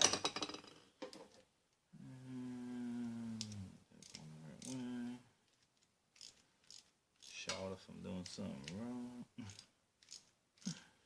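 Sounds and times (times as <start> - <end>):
man humming a steady tone: 2.0 - 3.7
metal tool parts clicking: 9.5 - 10.7.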